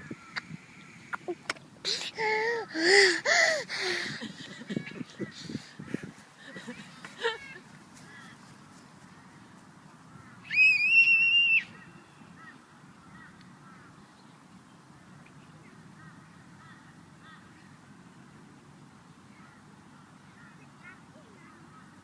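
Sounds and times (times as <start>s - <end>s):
squeaky gasp for breath: 1.1s - 4.5s.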